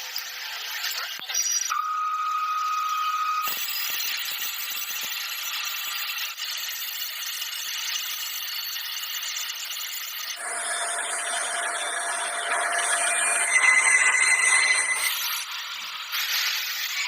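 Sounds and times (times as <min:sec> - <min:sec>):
machine tool cutting metal: 0:10.1 - 0:17.0.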